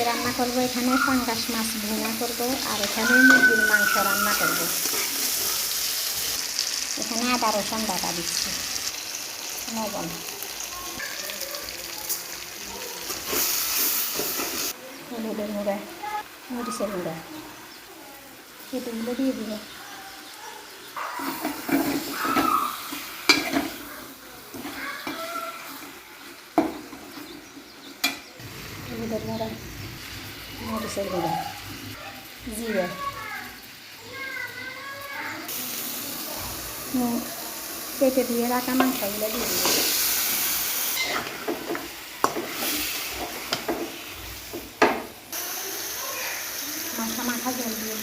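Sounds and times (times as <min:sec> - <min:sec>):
chicken sizzling in a pan: 0:00.0 - 0:48.0
spoon scraping a pot: 0:02.0 - 0:05.7, 0:40.9 - 0:43.8.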